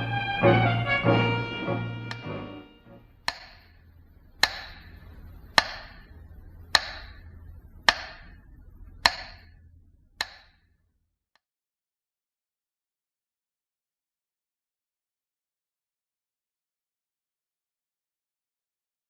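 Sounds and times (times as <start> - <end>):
faint low hum: 0.0 - 11.3
metronome ticking: 2.0 - 2.5, 3.2 - 3.8, 4.4 - 8.4, 9.0 - 9.6, 10.2 - 10.7.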